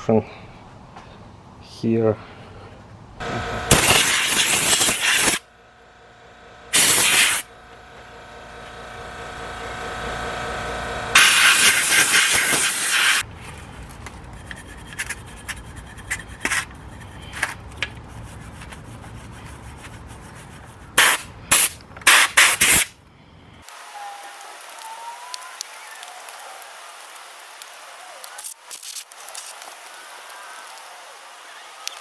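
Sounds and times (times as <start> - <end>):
aerosol spray can hissing: 3.7 - 5.4, 6.7 - 7.5, 11.2 - 13.2, 23.7 - 32.0
clicks and handling noises: 23.6 - 32.0.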